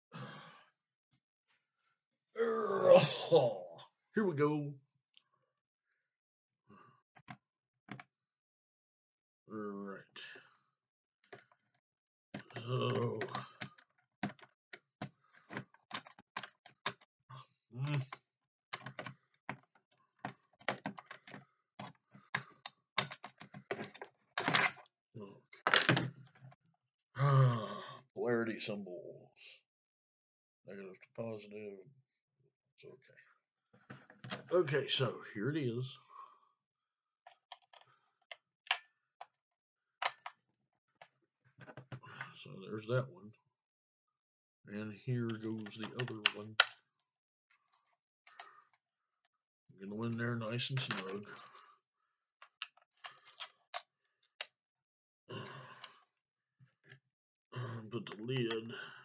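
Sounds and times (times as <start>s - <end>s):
plastic parts clicking: 15.5s - 17.0s, 18.7s - 24.9s, 37.3s - 38.9s, 40.0s - 40.4s, 52.4s - 54.5s.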